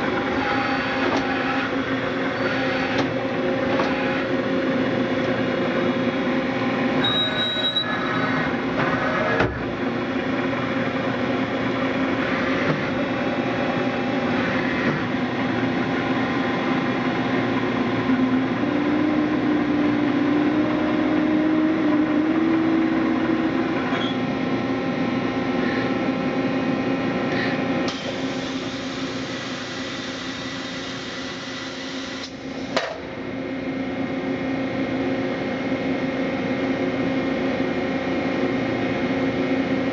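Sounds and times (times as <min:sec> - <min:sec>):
machining center mechanical hum: 0:00.0 - 0:39.9.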